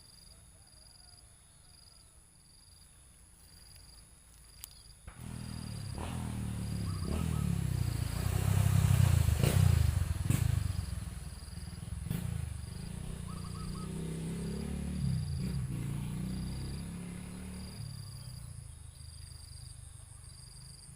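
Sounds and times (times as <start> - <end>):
motorcycle engine passing: 5.1 - 19.3.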